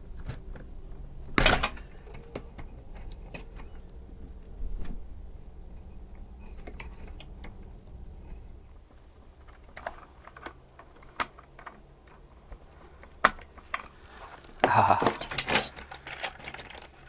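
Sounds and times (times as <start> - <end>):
low steady hum: 0.0 - 15.4
dull thump: 1.3 - 2.1.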